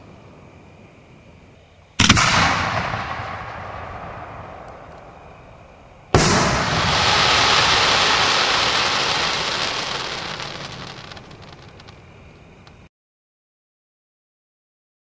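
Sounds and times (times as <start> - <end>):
firework crackles: 2.0 - 12.9
firework hissing tail: 6.1 - 12.7
firework shell bursting: 6.2 - 12.1.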